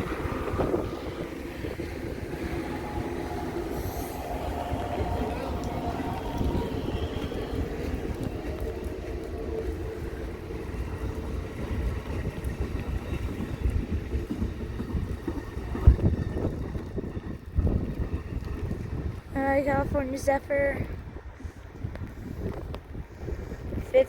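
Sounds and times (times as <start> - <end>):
train rumbling past: 0.0 - 24.0
wind buffeting microphone: 0.0 - 24.0.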